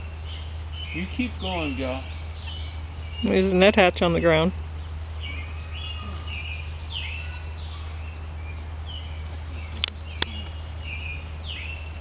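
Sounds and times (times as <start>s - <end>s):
songbirds chirping: 0.0s - 12.0s
steady low hum: 0.0s - 12.0s
sharp clicks: 3.2s - 3.5s.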